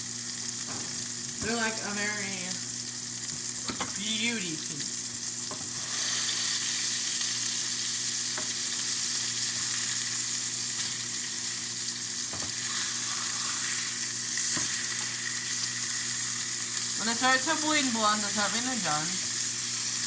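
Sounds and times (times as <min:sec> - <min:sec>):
patties sizzling in a skillet: 0:00.0 - 0:20.0.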